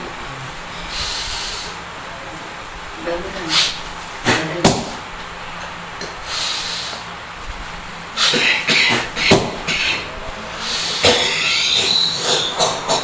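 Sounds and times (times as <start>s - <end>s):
breathy exhale: 0.7s - 1.8s, 6.2s - 7.1s, 10.5s - 11.4s
person coughing: 8.3s - 10.0s.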